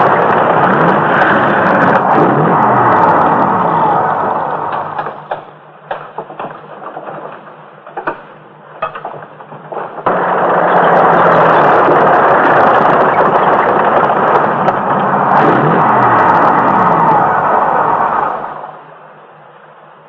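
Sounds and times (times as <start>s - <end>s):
loud steady rushing noise: 0.0s - 5.8s, 10.0s - 20.0s
sharp cracks: 0.0s - 7.4s, 10.0s - 18.8s.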